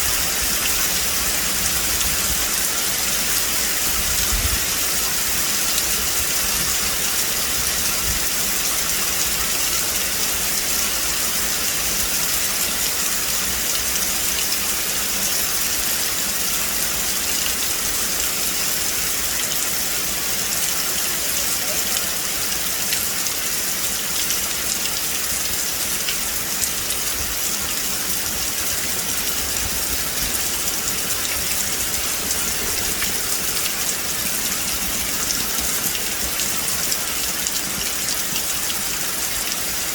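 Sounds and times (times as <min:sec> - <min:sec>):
rain hissing: 0:00.0 - 0:39.9.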